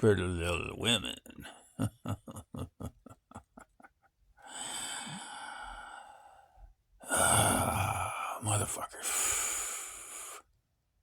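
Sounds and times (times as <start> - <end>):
man sighing: 7.0 - 8.5.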